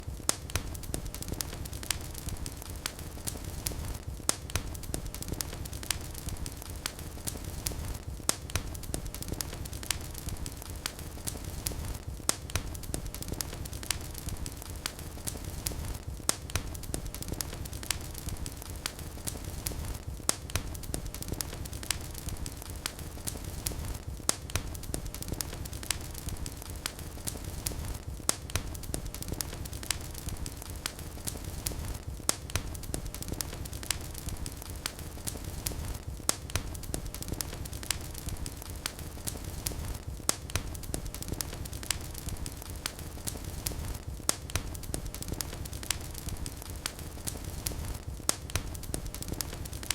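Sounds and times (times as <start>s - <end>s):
wood fire crackling and popping: 0.0s - 49.9s
low rumble of flames: 0.1s - 49.9s.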